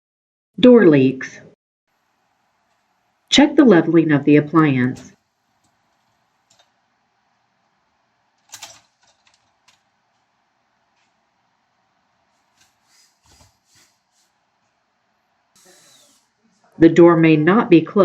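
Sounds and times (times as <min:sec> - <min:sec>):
faint clicks and knocks: 0:05.0 - 0:06.8, 0:08.4 - 0:11.3.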